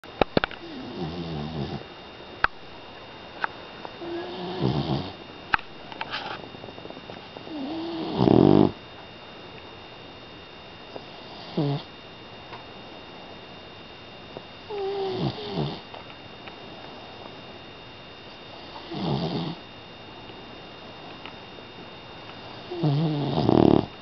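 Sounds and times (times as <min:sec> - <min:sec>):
puppy snoring: 0:00.6 - 0:01.8, 0:04.0 - 0:05.2, 0:07.4 - 0:08.8, 0:11.0 - 0:11.9, 0:14.7 - 0:15.9, 0:18.5 - 0:19.6, 0:22.5 - 0:24.0.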